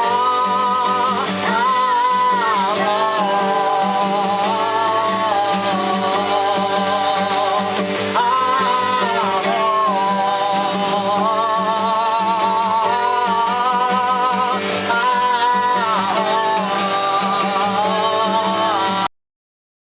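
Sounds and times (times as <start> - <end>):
person singing long sliding notes: 0.0 - 19.1
plucked guitar: 0.0 - 19.1.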